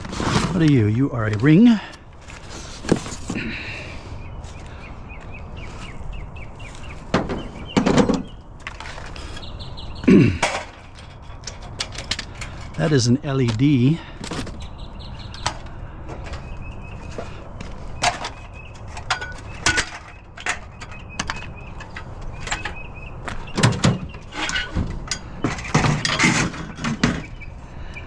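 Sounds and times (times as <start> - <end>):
scrap items clattering: 0.0 - 0.9, 23.6 - 27.4.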